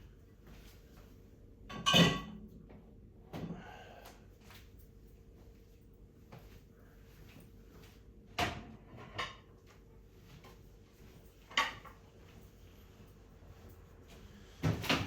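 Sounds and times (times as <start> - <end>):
dishes clinking: 1.7 - 2.4.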